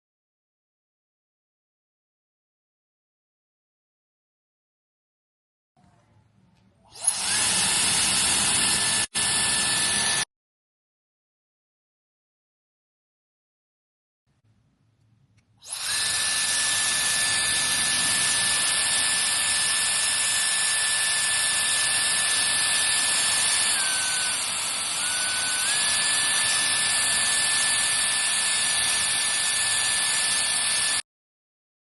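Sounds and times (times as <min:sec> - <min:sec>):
hair dryer blowing with high whine: 0:06.9 - 0:10.3, 0:15.6 - 0:31.0.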